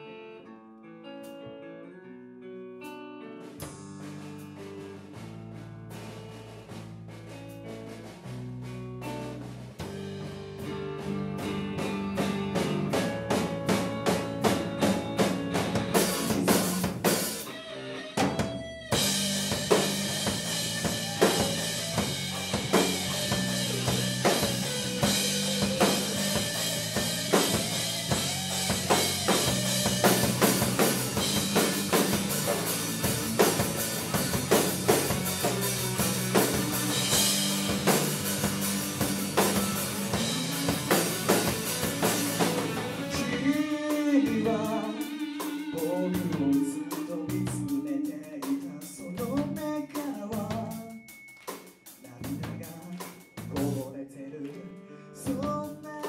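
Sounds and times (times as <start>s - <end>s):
live rock band playing: 1.0s - 54.0s, 54.8s - 56.0s.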